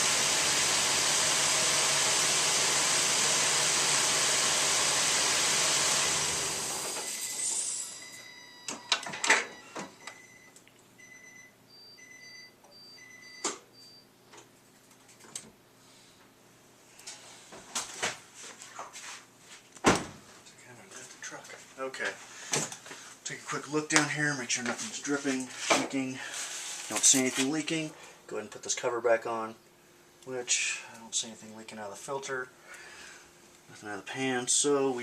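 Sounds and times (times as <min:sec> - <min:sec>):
pickup engine running: 0:00.0 - 0:07.0
vehicle warning chime beeps: 0:07.0 - 0:14.1.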